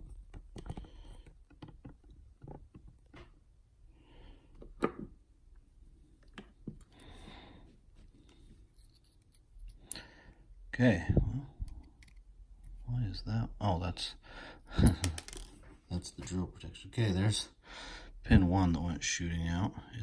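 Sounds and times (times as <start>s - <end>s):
tools scraping: 8.4s - 9.9s
metal lock parts clicking: 11.7s - 12.8s.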